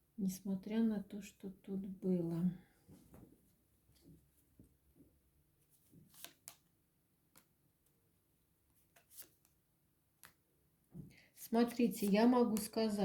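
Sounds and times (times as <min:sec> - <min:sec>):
cards flicking and tapping: 0:06.1 - 0:06.7, 0:07.3 - 0:07.6, 0:10.2 - 0:10.4, 0:11.6 - 0:12.8.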